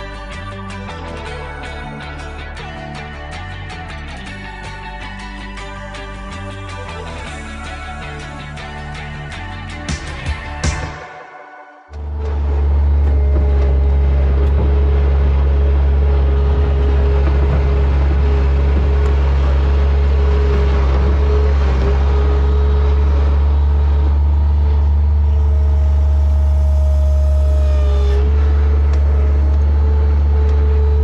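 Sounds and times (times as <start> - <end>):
farm machine engine rumbling: 11.9 - 31.0.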